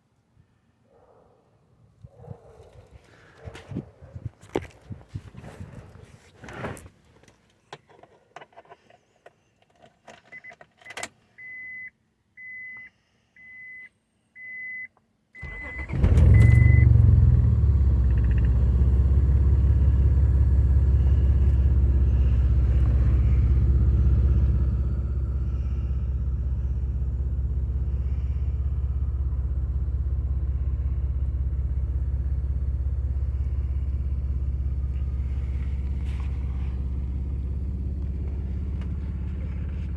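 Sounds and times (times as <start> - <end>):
car engine starting and running: 15.4 - 39.9.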